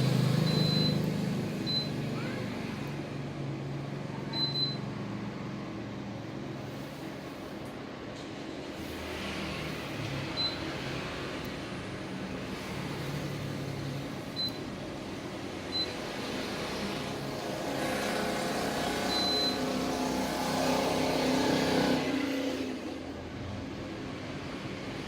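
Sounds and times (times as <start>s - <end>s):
air conditioner running: 0.0s - 25.0s.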